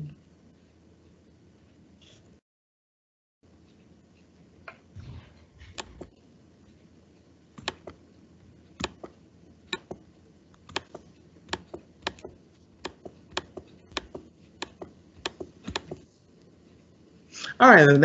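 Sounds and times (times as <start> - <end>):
computer mouse clicks: 5.6 - 6.2, 7.6 - 8.0, 8.8 - 16.0.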